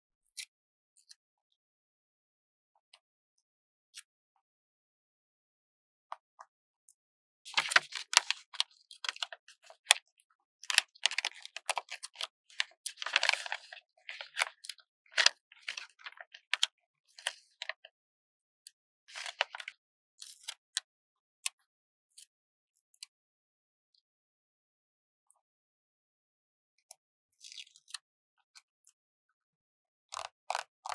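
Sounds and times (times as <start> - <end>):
crackly paper rustling: 7.5 - 9.4, 10.8 - 14.6, 15.2 - 16.3, 19.1 - 19.6.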